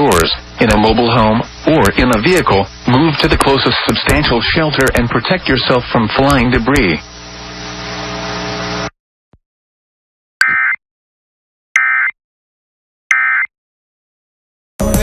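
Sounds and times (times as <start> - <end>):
static hiss with low hum: 0.0 - 8.9.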